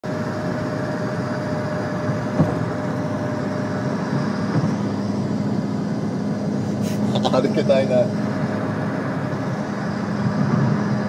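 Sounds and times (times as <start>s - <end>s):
road and wind noise: 0.0s - 11.0s
short knock: 2.4s - 2.8s.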